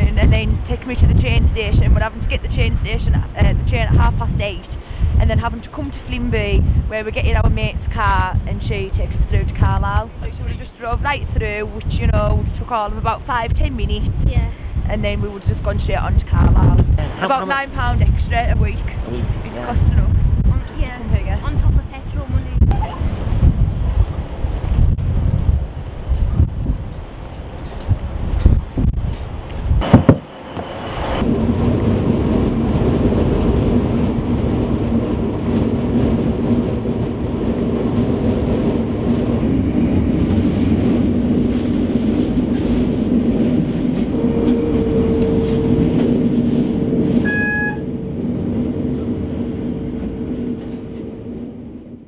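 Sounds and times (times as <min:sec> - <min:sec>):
passenger train droning hum: 0:00.0 - 0:52.0
higher hum: 0:39.3 - 0:52.0
brief beep: 0:46.8 - 0:48.1.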